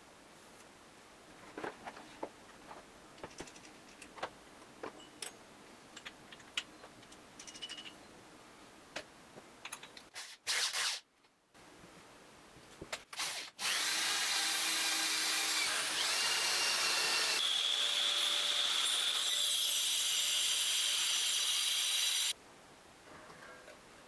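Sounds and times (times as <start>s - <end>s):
power tool running: 13.3s - 19.5s.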